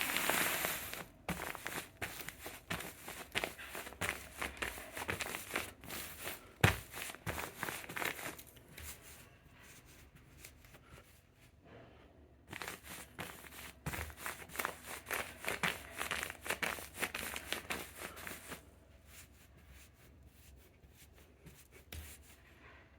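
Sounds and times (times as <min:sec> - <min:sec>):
cushion crinkling and crackling: 0:00.0 - 0:08.6, 0:12.5 - 0:18.6.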